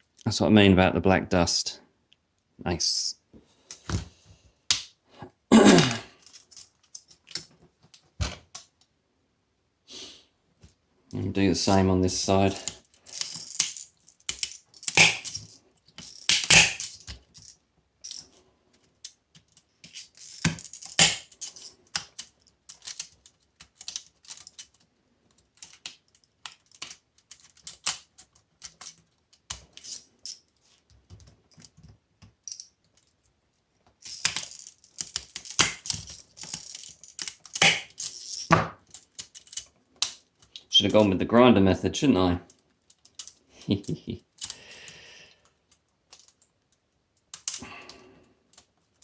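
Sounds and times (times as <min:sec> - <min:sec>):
hand cutters snipping copper wire: 0:12.6 - 0:15.5, 0:16.1 - 0:17.2, 0:20.4 - 0:23.1, 0:34.2 - 0:38.6.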